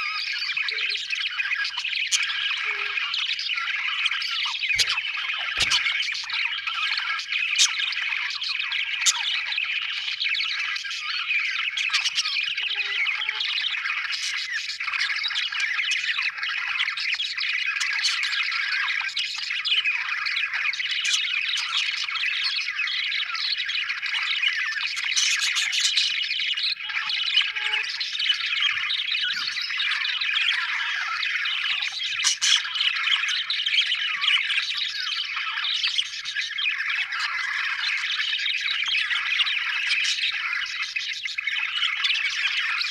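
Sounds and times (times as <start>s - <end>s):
budgerigars chattering: 0.0s - 42.9s
sharp bird calls: 0.0s - 42.9s.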